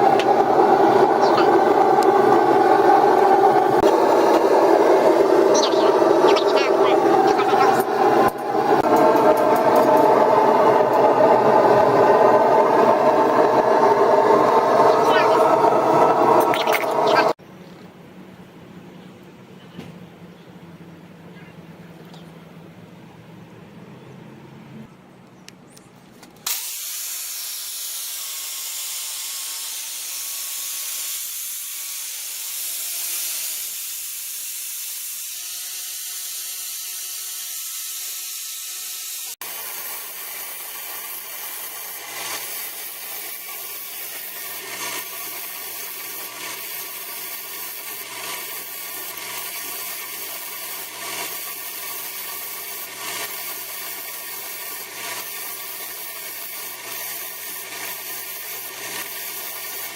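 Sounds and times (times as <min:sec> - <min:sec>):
power tool motor humming: 0:26.4 - 0:59.9.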